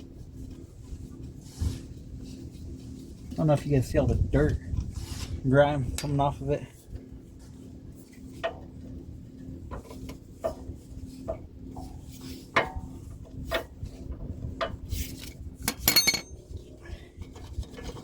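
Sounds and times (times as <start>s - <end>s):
metal tools knocking on metal: 15.7s - 16.4s.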